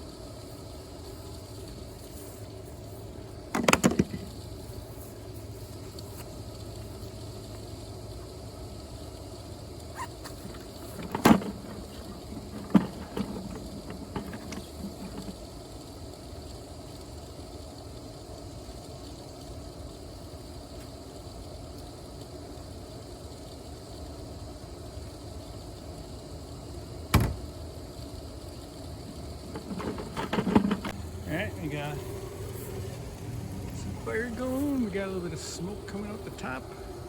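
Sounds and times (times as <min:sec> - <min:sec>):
low background noise: 0:00.0 - 0:37.0
sharp knocks on wood and metal: 0:27.2 - 0:27.5.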